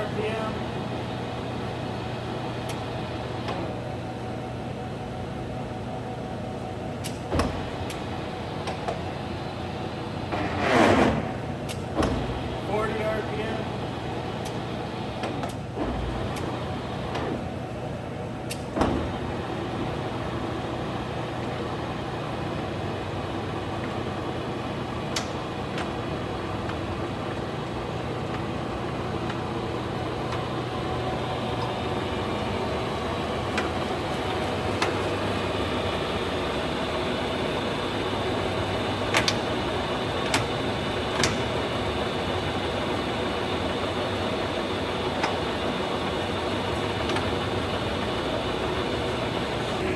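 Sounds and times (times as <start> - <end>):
lathe humming: 19.2 - 49.9.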